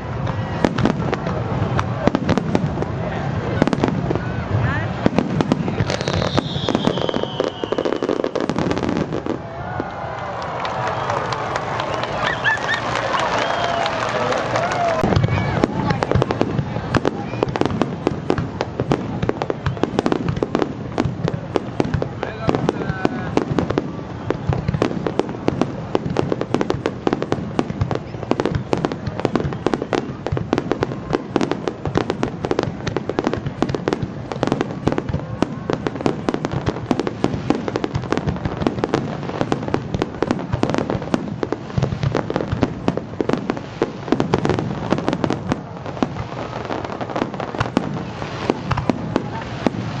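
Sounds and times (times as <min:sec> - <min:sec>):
fireworks bangs and crackles: 0:00.0 - 0:50.0.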